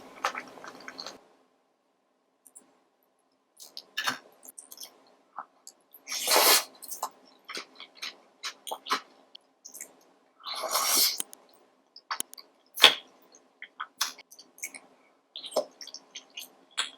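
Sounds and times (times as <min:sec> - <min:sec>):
wet eating clicks and mouth smacks: 0:11.0 - 0:11.4, 0:12.0 - 0:13.0.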